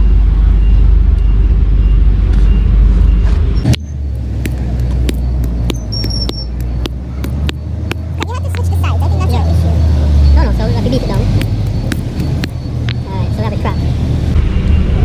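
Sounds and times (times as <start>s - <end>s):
steady low rumble: 0.0s - 15.0s
almond shell being beaten: 3.8s - 8.8s, 11.2s - 13.0s.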